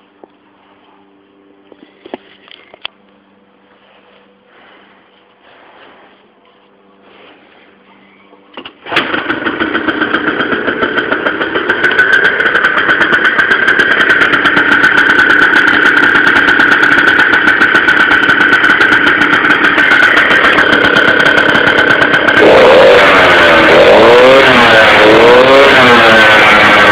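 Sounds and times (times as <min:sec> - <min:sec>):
scooter engine idling: 0:03.7 - 0:26.9.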